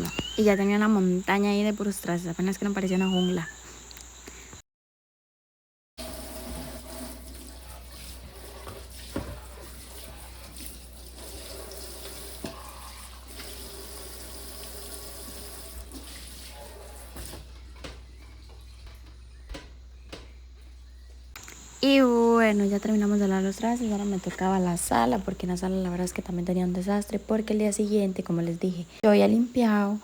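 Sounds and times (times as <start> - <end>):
tap water running into sink: 6.0 - 19.1.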